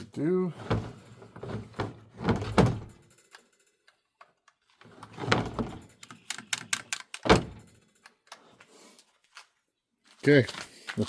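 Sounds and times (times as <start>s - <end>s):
plastic and metal clattering: 0.6s - 8.6s.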